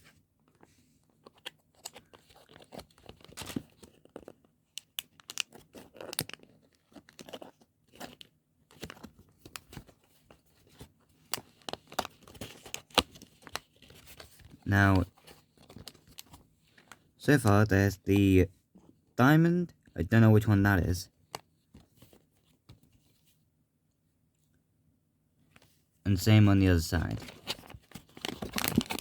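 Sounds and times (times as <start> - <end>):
cardboard box crunching and rustling: 27.2 - 29.0.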